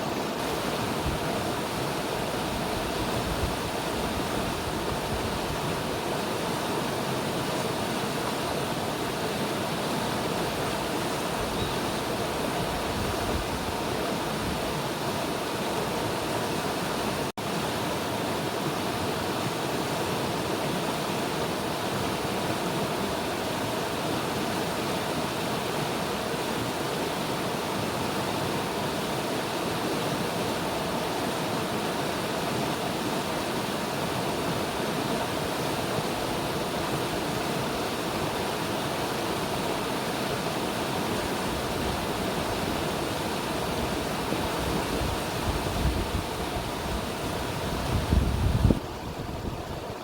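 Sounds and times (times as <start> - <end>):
river water rushing: 0.0 - 50.0
wind buffeting microphone: 12.6 - 14.7, 43.6 - 50.0.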